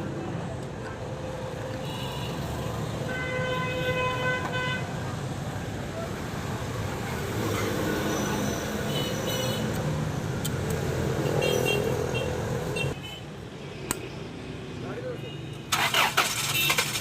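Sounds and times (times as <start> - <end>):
car engine misfiring: 15.7 - 17.0.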